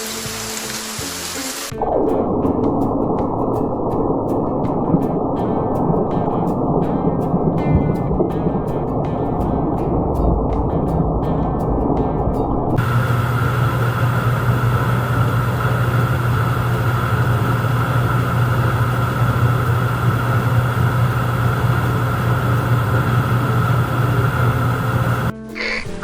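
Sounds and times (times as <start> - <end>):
loud mechanical hum: 12.8 - 25.3.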